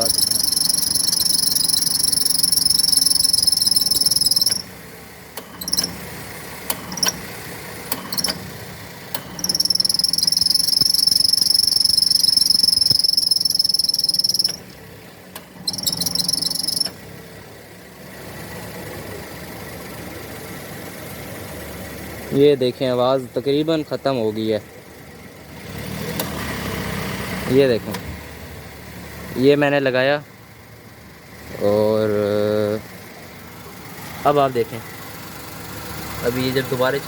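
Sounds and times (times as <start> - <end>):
drive belt squealing: 0.0 - 4.8, 5.4 - 6.1, 7.9 - 8.5, 9.1 - 14.8, 15.4 - 17.1
car engine idling: 0.0 - 25.5, 27.5 - 37.0.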